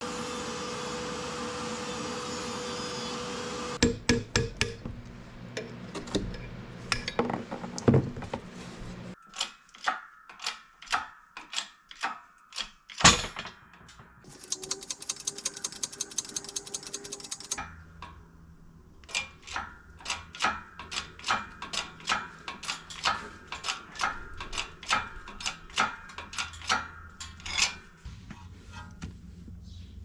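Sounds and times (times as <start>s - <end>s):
hammer strikes on metal: 3.8s - 4.9s.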